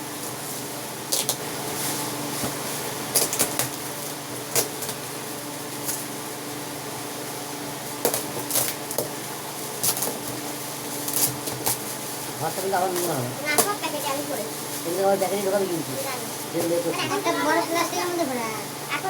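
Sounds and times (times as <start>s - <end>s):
steady mechanical hum: 0.0s - 19.0s.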